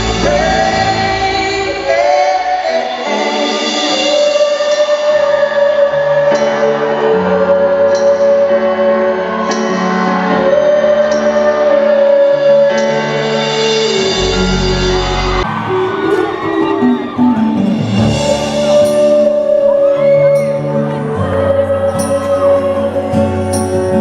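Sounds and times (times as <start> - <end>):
live band music: 0.0 - 24.0
deep bass note: 14.1 - 16.0.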